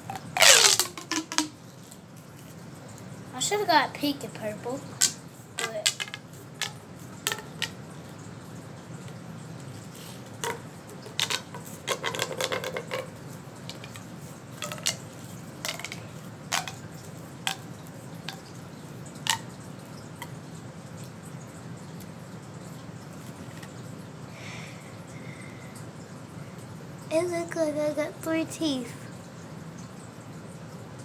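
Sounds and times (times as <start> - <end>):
small hard objects clicking: 0.0 - 1.6, 5.0 - 7.8, 10.0 - 18.6, 19.2 - 19.6.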